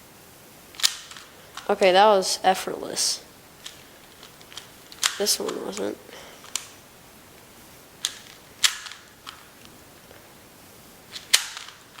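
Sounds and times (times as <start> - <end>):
plastic puzzle cube clicks: 0.8 - 1.7, 3.6 - 5.6, 8.0 - 9.5, 11.1 - 12.0.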